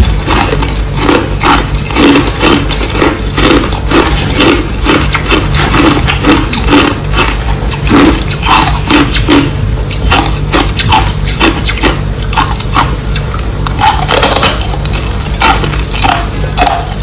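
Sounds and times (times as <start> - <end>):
ice being chewed: 0.0 - 17.0.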